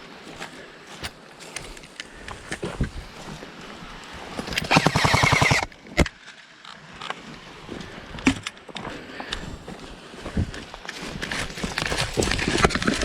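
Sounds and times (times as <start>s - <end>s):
airsoft gun full-auto burst: 4.6s - 5.7s.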